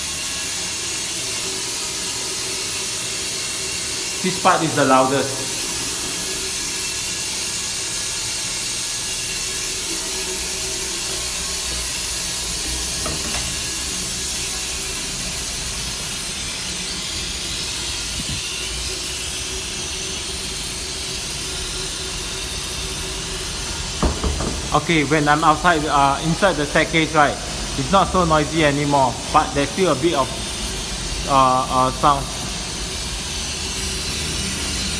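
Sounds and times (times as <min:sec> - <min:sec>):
water running: 0:00.2 - 0:15.7, 0:22.0 - 0:34.0.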